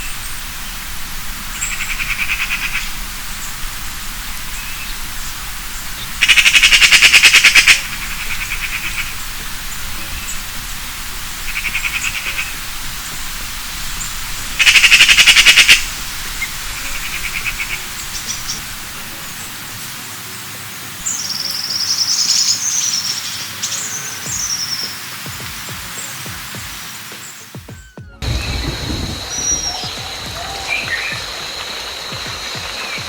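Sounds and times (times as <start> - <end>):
high warbling birdsong: 0.0 - 33.0
frog trills: 1.4 - 19.9.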